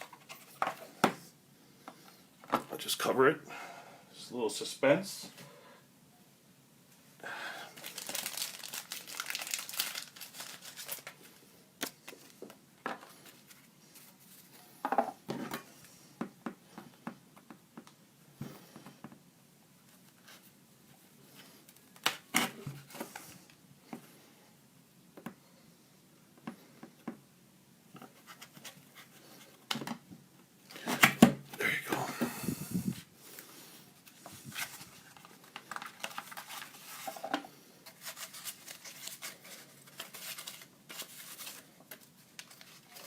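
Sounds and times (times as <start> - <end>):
packaging crinkling and rustling: 7.7 - 14.5, 34.0 - 43.0.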